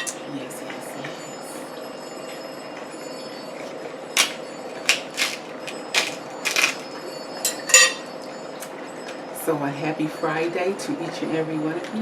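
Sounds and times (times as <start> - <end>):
crab shell cracking: 4.2 - 6.9.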